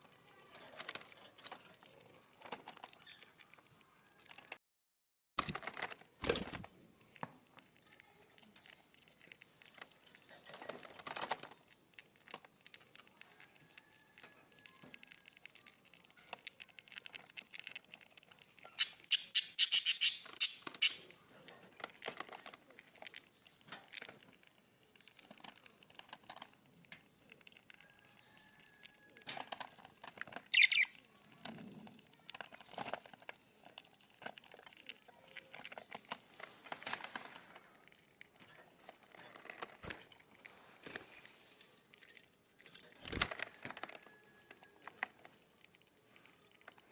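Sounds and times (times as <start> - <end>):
birds scratching and clicking: 0.0 - 4.6, 5.4 - 46.9
bird chirp: 18.8 - 21.0, 30.5 - 31.0.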